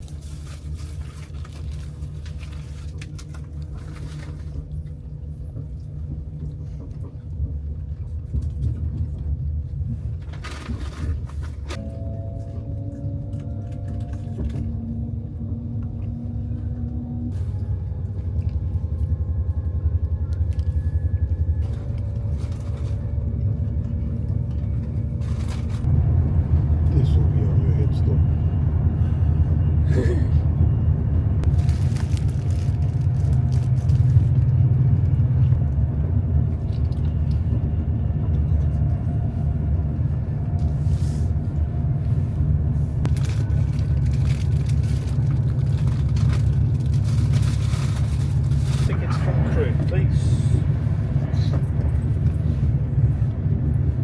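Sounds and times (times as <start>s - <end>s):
vehicle rumbling: 0.0s - 54.0s
faint humming tones: 11.5s - 54.0s.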